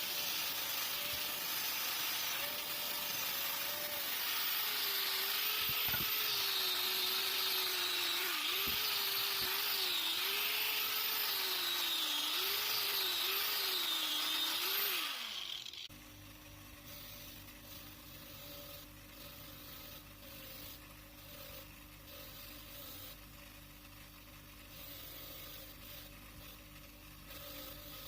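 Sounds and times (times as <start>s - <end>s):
motor-driven wire brush scrubbing: 0.0s - 28.0s.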